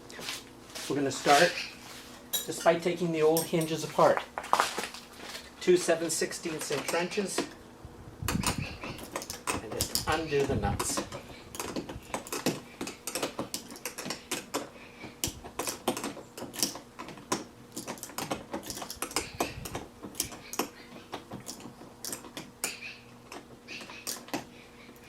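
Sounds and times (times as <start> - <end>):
wrenches clicking on metal: 8.4 - 24.4.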